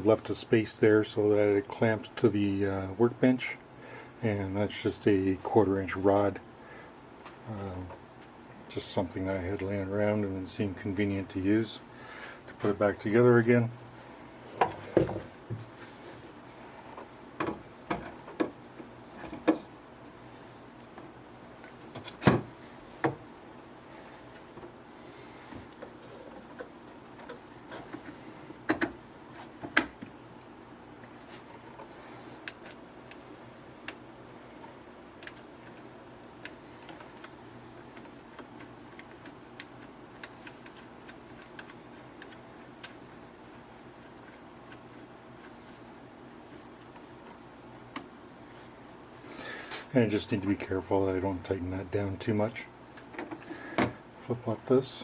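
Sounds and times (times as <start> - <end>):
wooden knocks and clunks: 14.6 - 15.7.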